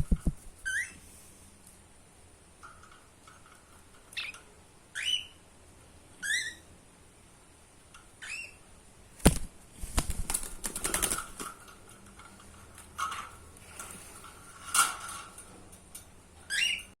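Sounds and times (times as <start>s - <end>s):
parrot chirping: 0.2s - 1.0s, 4.1s - 5.4s, 6.2s - 6.7s, 8.2s - 8.6s, 16.5s - 17.0s
rapid clicks and rattles: 9.3s - 16.1s.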